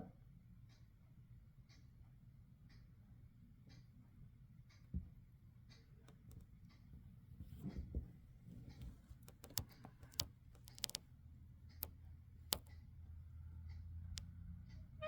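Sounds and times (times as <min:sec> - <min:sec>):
sharp clicks and ticks: 0:06.1 - 0:06.6, 0:08.7 - 0:11.1, 0:11.7 - 0:12.8.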